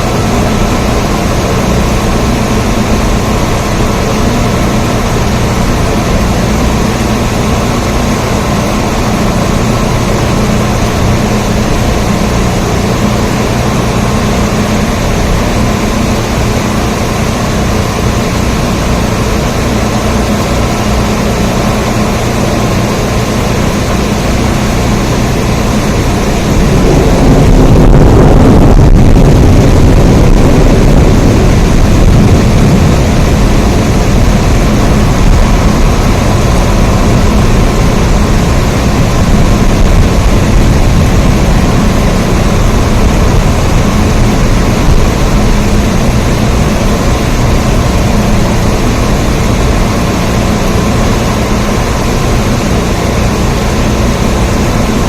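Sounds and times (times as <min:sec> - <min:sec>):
heavy rain: 0:00.0 - 0:55.0
low rumble: 0:22.9 - 0:55.0.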